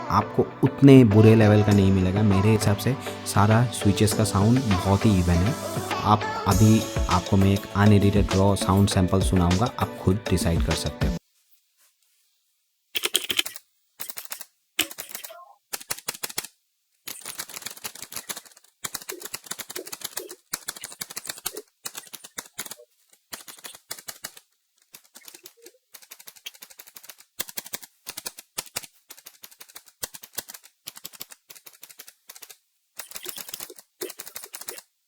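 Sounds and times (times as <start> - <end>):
mechanical keyboard key clicks: 25.0 - 34.8.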